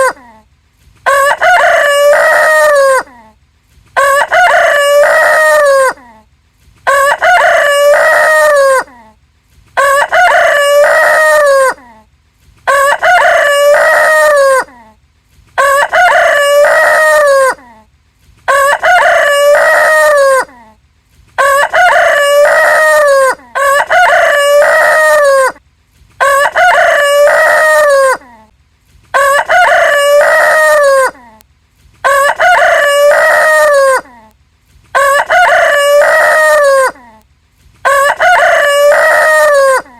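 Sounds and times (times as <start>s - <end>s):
rooster crowing: 1.0s - 3.1s, 4.0s - 6.0s, 6.9s - 8.9s, 9.8s - 11.8s, 12.7s - 14.7s, 15.6s - 17.6s, 18.5s - 20.6s, 21.4s - 25.6s, 26.2s - 28.3s, 29.1s - 31.2s, 32.0s - 34.1s, 34.9s - 37.0s, 37.8s - 39.9s.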